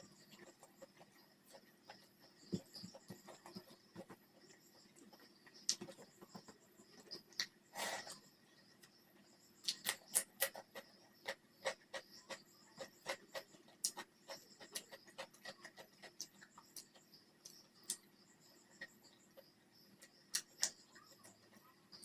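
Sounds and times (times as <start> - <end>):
wet chewing and mouth clicks: 4.9 - 8.2, 9.6 - 18.1, 20.0 - 21.5.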